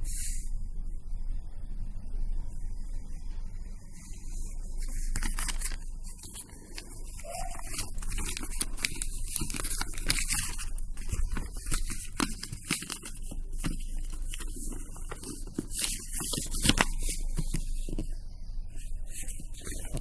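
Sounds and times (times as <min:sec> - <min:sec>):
steady low hum: 0:00.0 - 0:20.0
cardboard and plastic crackling: 0:04.6 - 0:20.0.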